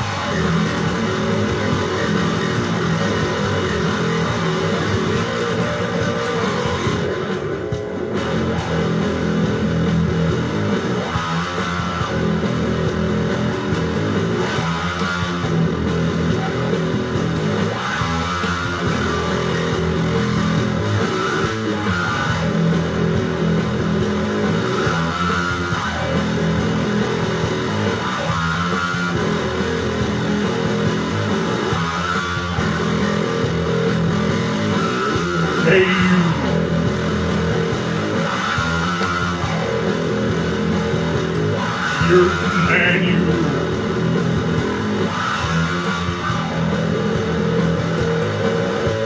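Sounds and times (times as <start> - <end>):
bass guitar: 0.0 - 49.0
strummed electric guitar: 0.0 - 49.0.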